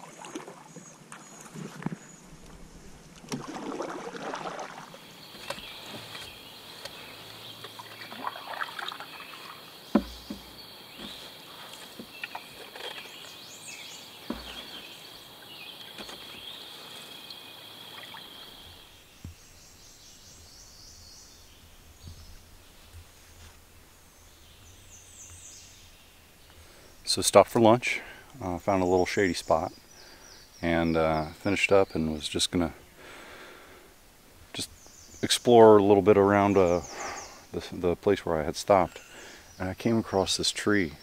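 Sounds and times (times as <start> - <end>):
paddle splashing and dripping: 0.0 - 13.4, 14.0 - 19.3
paddle knocking against hull: 9.9 - 11.2, 14.2 - 14.9.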